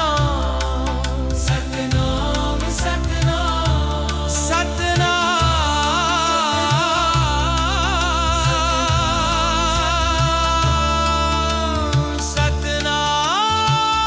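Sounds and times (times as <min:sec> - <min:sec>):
devotional melody: 0:00.0 - 0:14.0
low continuous accompaniment: 0:00.0 - 0:14.0.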